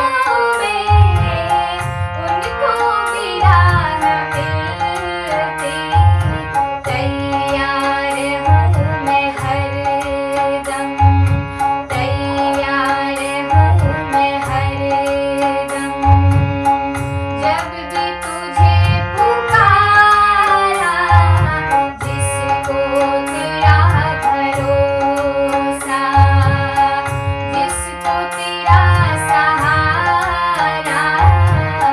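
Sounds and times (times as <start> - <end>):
devotional song: 0.0 - 31.9
tabla: 0.0 - 31.9
deep drum beat: 0.9 - 2.3.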